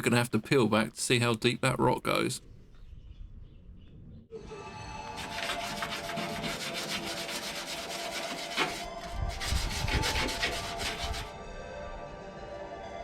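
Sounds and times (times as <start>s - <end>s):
abrasive rasping on steel: 5.1s - 11.3s.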